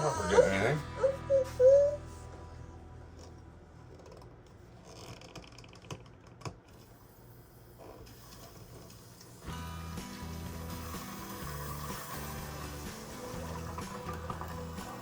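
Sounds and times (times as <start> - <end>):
water heater ticking and crackling: 8.1 - 15.0.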